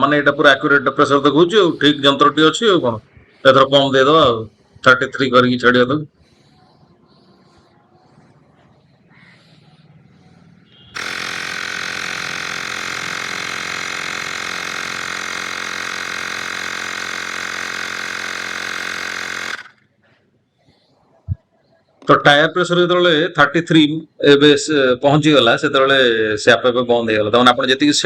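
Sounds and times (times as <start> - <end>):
air compressor running: 6.1 - 20.8.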